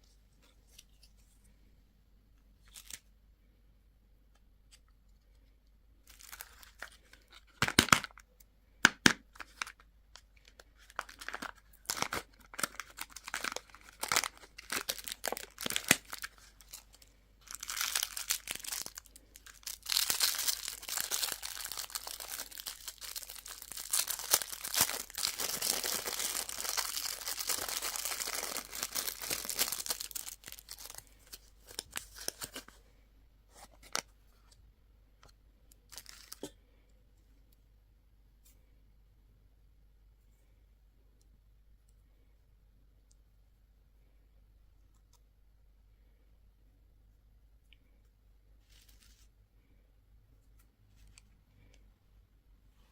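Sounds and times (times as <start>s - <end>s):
candy wrapper crinkling: 6.0s - 32.7s, 35.7s - 36.5s.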